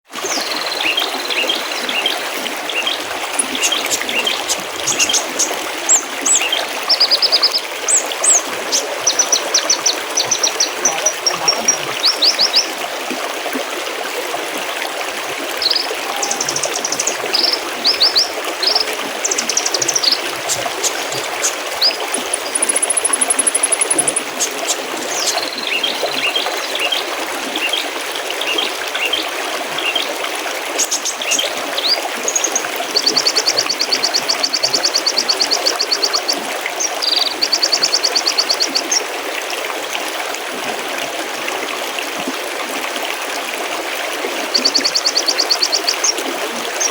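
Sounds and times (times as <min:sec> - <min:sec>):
stream trickling: 0:00.0 - 0:46.9
songbirds chirping and trilling: 0:00.3 - 0:12.7, 0:15.6 - 0:27.9.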